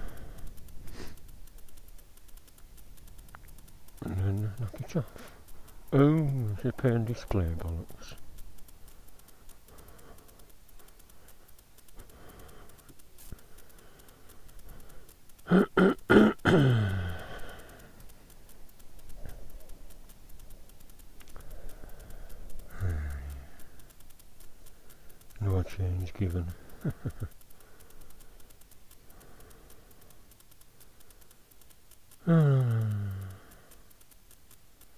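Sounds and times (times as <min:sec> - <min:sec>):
faint background noise: 0:00.0 - 0:34.9
man coughing: 0:15.5 - 0:17.2.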